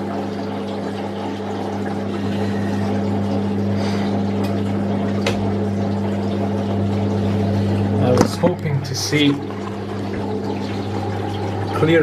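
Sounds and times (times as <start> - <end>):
drain pump humming: 0.0 - 12.0.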